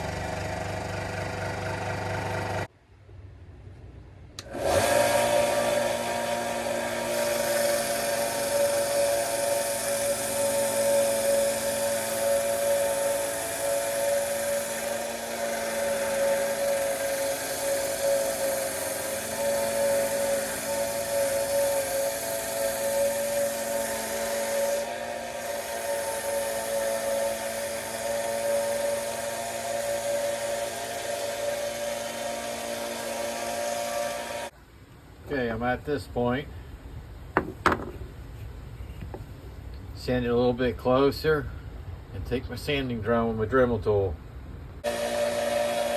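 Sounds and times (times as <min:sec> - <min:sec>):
rotary tool whining while grinding: 0:00.0 - 0:02.7, 0:04.4 - 0:34.5, 0:44.8 - 0:45.9.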